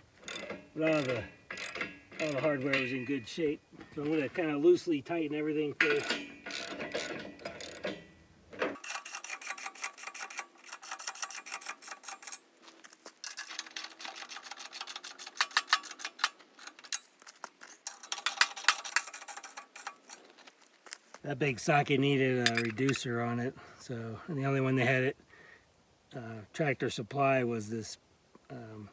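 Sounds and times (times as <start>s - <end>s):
metal tools clinking: 0.2s - 4.4s, 5.8s - 20.4s, 22.4s - 23.0s
socket ratchet clicking: 0.3s - 2.4s, 6.0s - 7.9s, 13.2s - 17.1s, 17.9s - 20.2s.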